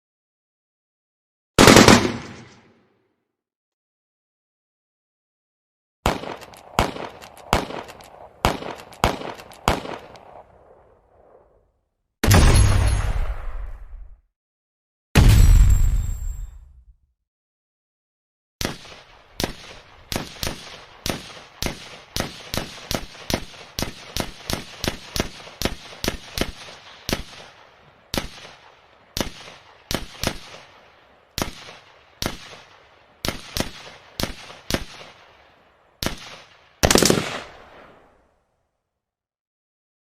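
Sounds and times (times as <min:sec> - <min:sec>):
pistol shots: 0:01.6 - 0:02.7, 0:06.0 - 0:10.5, 0:18.6 - 0:35.3, 0:36.0 - 0:37.9.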